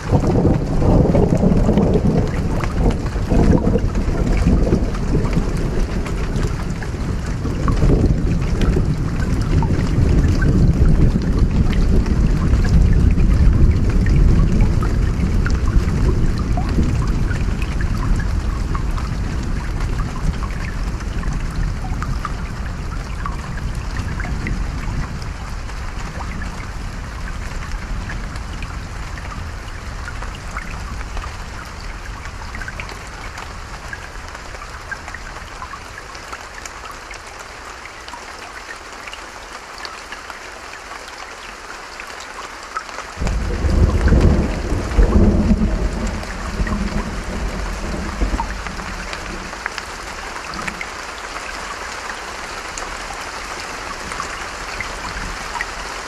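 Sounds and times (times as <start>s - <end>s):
thunder rumbling: 0.0s - 33.9s, 43.2s - 50.8s
rain pattering: 0.0s - 56.0s
stream water: 0.0s - 56.0s.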